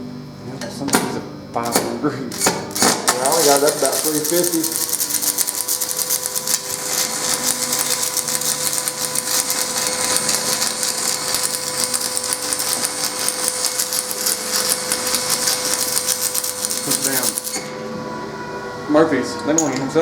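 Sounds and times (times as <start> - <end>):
thin electrical whine: 1.5 - 20.0
welding arc crackling: 2.3 - 17.7.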